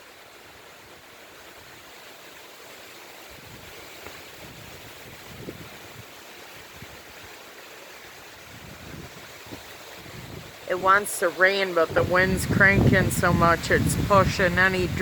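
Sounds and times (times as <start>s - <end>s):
strong wind blowing: 3.3s - 7.2s, 8.4s - 15.0s
wind buffeting microphone: 3.3s - 7.3s, 8.4s - 15.0s.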